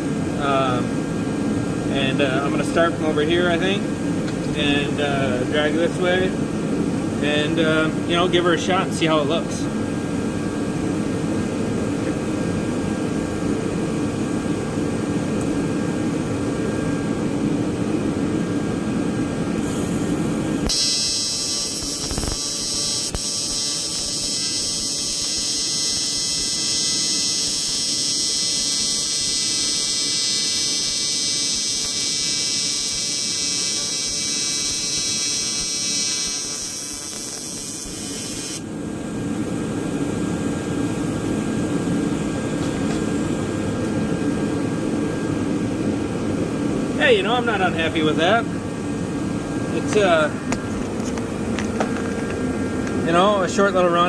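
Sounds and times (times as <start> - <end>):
fan hum: 0.0 - 54.0
welding arc buzzing: 19.4 - 44.1.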